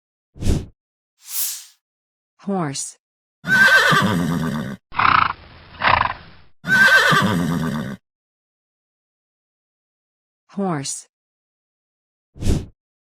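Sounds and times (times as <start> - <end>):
horse whinnying: 3.5 - 4.7, 6.6 - 7.7.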